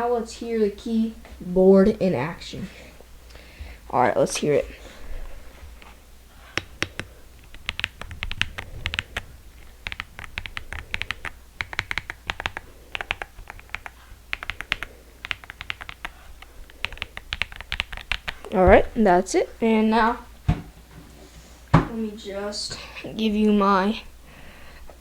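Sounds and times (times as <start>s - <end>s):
mechanical keyboard typing: 6.6s - 18.5s.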